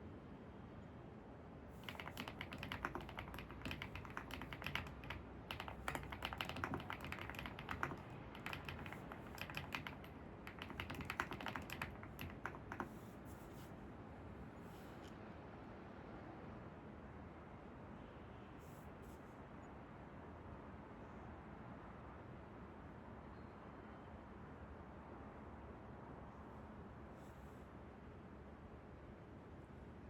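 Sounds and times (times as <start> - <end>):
typing on computer keyboard: 1.8 - 13.4.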